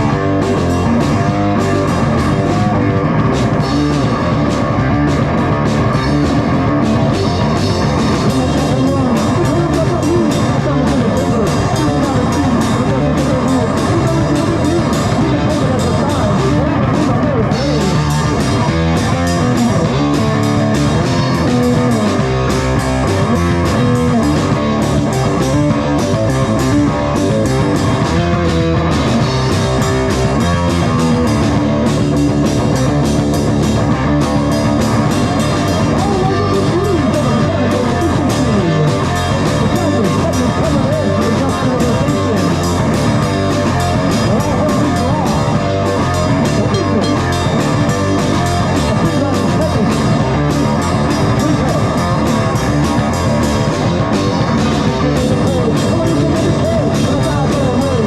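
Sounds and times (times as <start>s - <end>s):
rock music: 0.0s - 58.0s.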